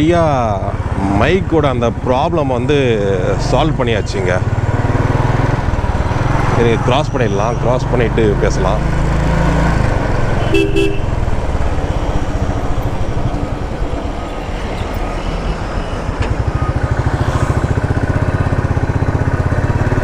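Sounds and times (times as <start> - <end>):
motorcycle engine running: 0.0 - 14.6, 16.0 - 20.0.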